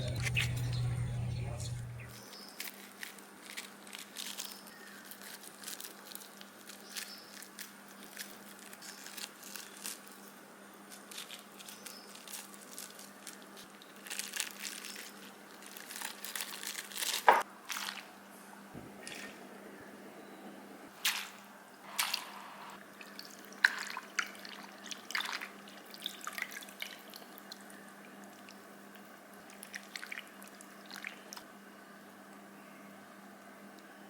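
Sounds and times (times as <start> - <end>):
steady low hum: 0.0 - 2.1
food crinkling squishing and crunching: 0.1 - 18.2.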